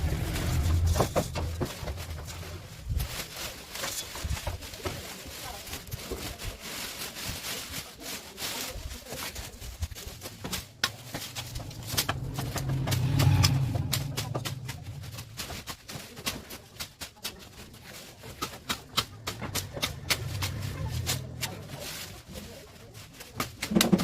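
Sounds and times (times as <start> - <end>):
low hum: 10.9 - 15.6.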